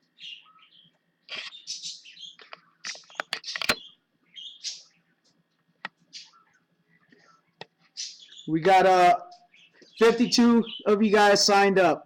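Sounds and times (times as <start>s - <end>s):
bird chirping: 0.0s - 12.0s
sharp clicks: 2.4s - 3.8s.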